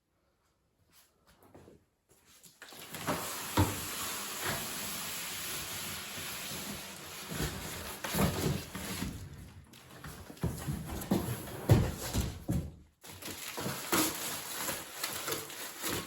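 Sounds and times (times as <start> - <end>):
cardboard and plastic wrap rustling: 2.3 - 16.0.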